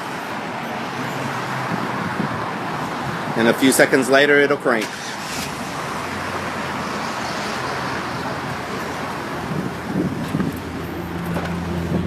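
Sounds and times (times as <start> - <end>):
engine starter cranking: 4.8 - 5.8.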